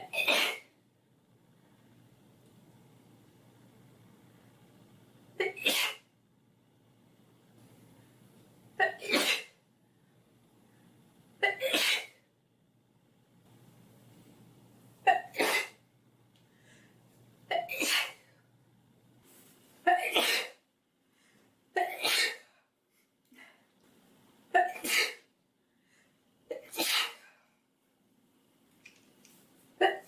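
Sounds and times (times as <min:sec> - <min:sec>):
girl sneezing: 0:05.4 - 0:06.0, 0:08.8 - 0:09.6, 0:17.7 - 0:18.2, 0:19.9 - 0:20.6, 0:21.8 - 0:22.5, 0:24.6 - 0:25.3, 0:26.6 - 0:27.2.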